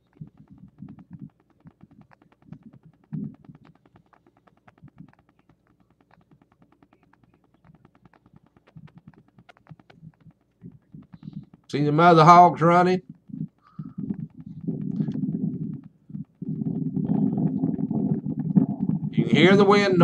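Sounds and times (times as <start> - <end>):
fine rapid ticks: 0.0 - 20.0
wind buffeting microphone: 12.5 - 20.0.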